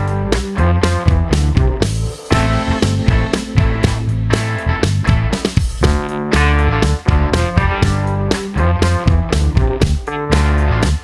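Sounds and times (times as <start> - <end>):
guitar and bass chords: 0.0 - 11.0
drum hits: 2.2 - 6.5.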